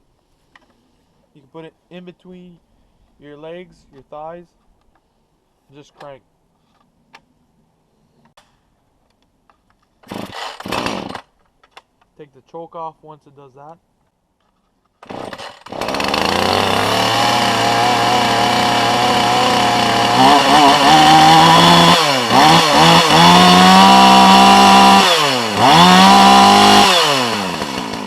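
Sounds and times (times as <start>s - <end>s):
chainsaw idling and revving: 10.1s - 11.3s, 15.0s - 28.0s.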